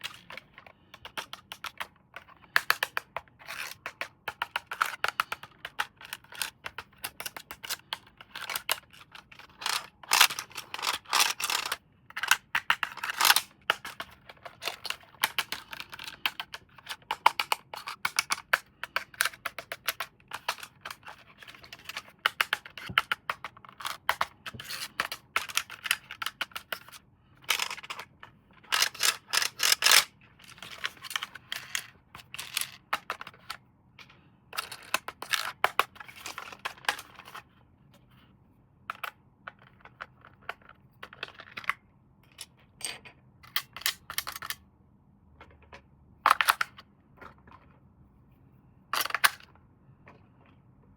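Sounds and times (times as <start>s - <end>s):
packaging clicks and scrapes: 0.0s - 37.5s.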